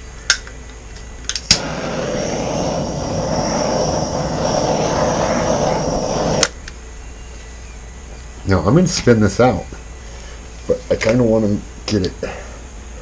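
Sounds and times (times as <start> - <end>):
torch click: 0.3 - 6.8
torch flame hissing: 1.3 - 10.9.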